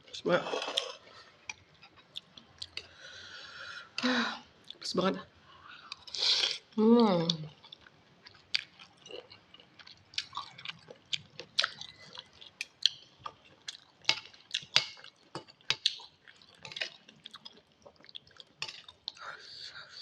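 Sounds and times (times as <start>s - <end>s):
person chewing noodles: 0.5s - 3.8s, 7.5s - 19.2s.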